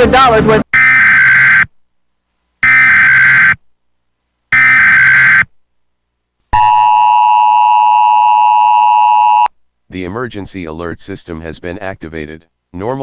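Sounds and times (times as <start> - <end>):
digital data tone bursts: 0.1 - 1.7, 2.6 - 3.6, 4.5 - 5.5.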